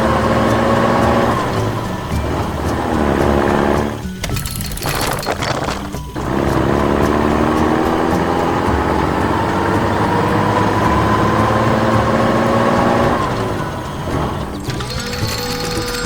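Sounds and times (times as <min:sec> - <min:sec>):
motor humming: 0:13.2 - 0:16.0.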